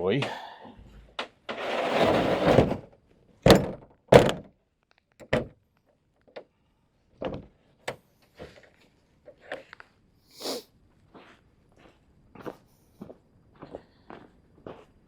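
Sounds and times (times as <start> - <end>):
objects knocking when set down: 1.2 - 4.5
loud scraping rustle: 1.5 - 2.9.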